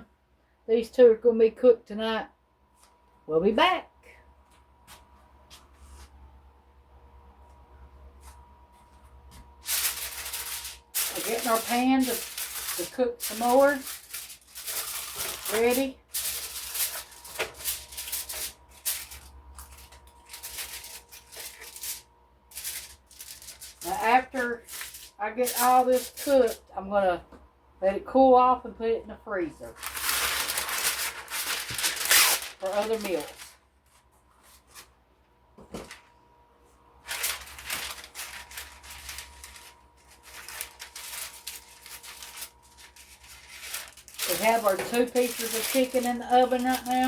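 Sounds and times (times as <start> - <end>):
faint high hum: 0.0 - 47.0
food rustling scrapes: 9.6 - 26.5, 29.7 - 34.9.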